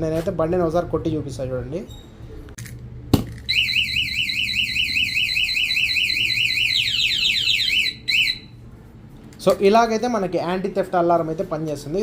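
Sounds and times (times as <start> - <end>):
warbling alarm siren: 3.5 - 8.5.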